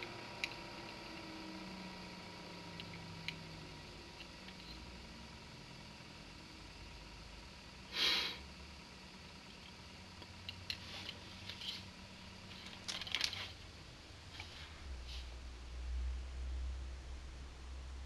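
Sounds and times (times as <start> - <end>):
computer fan humming: 0.0 - 18.0
handling rustles and clicks: 10.5 - 13.6.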